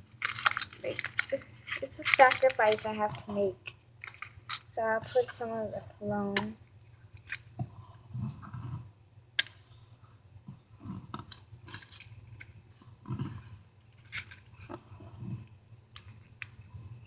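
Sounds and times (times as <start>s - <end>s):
packaging rustling: 0.0s - 3.2s, 4.0s - 5.4s.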